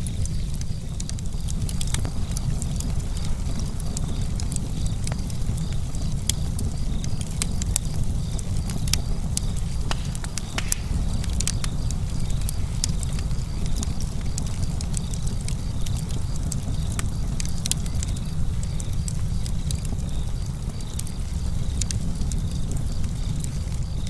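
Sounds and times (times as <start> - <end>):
burning wood crackling: 0.0 - 24.0
sharp pops: 8.9 - 13.9
low rumble: 9.0 - 15.4.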